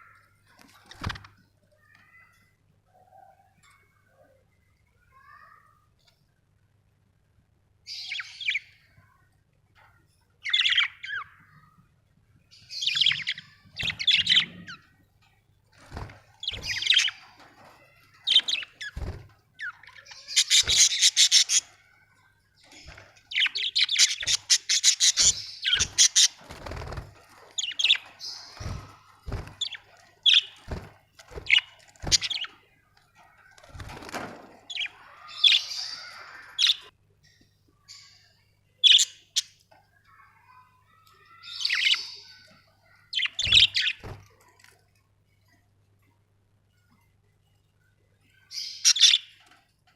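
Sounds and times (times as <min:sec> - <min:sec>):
budgerigars chirping and chattering: 0:12.6 - 0:14.8, 0:16.4 - 0:17.3, 0:19.6 - 0:21.8, 0:22.7 - 0:26.9, 0:27.6 - 0:30.8, 0:31.4 - 0:32.6, 0:34.7 - 0:36.9, 0:38.8 - 0:39.6, 0:41.3 - 0:44.0, 0:48.5 - 0:49.4.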